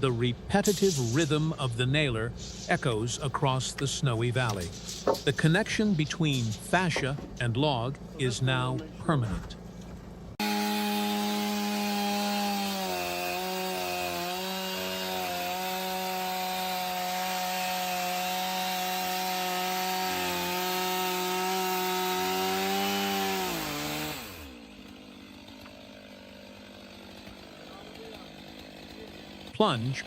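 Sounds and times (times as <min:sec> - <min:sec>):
chainsaw cutting timber: 0:00.2 - 0:09.7, 0:10.3 - 0:30.0.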